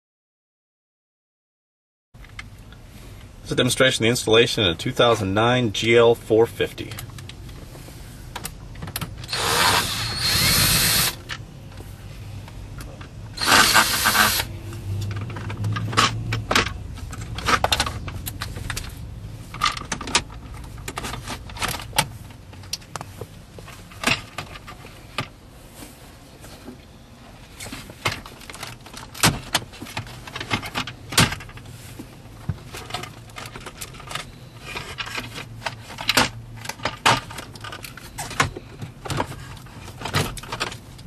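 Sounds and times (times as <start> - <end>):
small power tool running: 9.3 - 11.2, 13.4 - 14.5
clicks and knocks of parts handled: 14.3 - 25.4, 27.6 - 31.7, 32.4 - 41.0.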